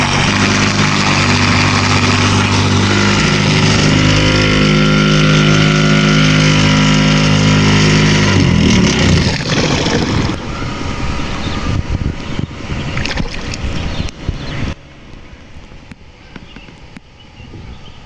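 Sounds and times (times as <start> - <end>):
rushing noise: 0.0 - 16.2
boat motor running: 0.0 - 18.0.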